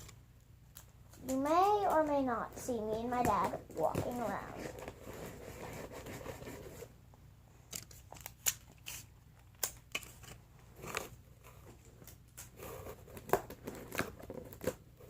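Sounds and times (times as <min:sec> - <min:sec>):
soft handling rustle: 0:00.8 - 0:06.9
scissors cutting cardboard: 0:03.9 - 0:06.9, 0:08.2 - 0:15.0.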